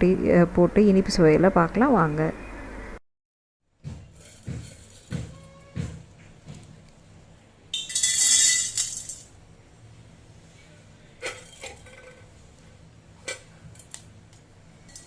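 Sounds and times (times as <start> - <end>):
kitchen utensils clinking: 7.7 - 9.3, 11.2 - 12.3.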